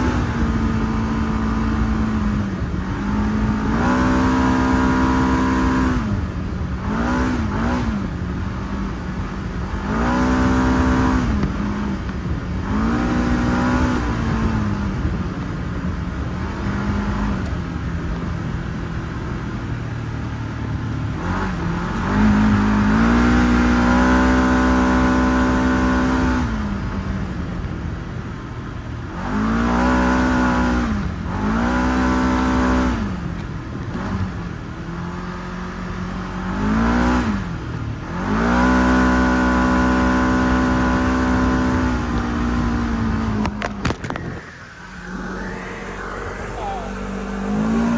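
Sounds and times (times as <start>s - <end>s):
utility vehicle engine revving: 0.0s - 47.9s.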